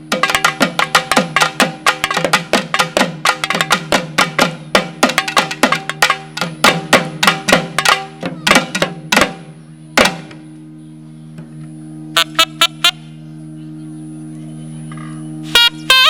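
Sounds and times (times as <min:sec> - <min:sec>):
rapid drum strokes: 0:00.0 - 0:10.4
steady held drone: 0:00.0 - 0:16.0.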